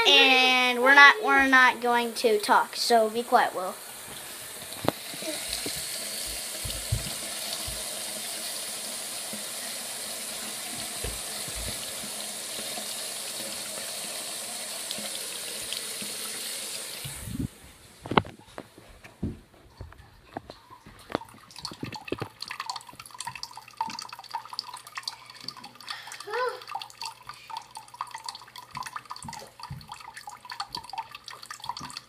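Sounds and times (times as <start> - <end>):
water pouring and splashing: 1.3 - 18.4, 20.4 - 32.0
knocks: 5.5 - 7.9.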